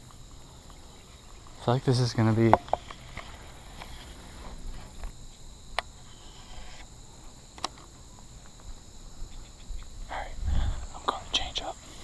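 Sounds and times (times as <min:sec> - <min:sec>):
insects trilling: 0:00.0 - 0:12.0
sharp clicks: 0:07.6 - 0:07.9.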